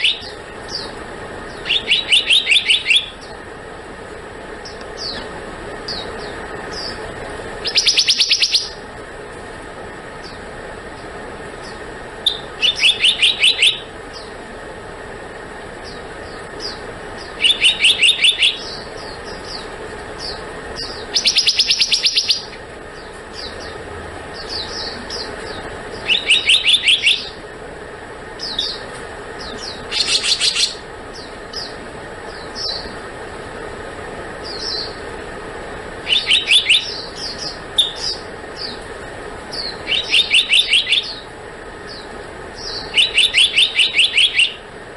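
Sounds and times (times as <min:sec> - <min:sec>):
bird calling sharp notes: 0:00.0 - 0:03.4, 0:04.6 - 0:08.9, 0:11.6 - 0:14.4, 0:15.8 - 0:27.5, 0:28.4 - 0:33.0, 0:36.0 - 0:38.8, 0:39.5 - 0:44.7.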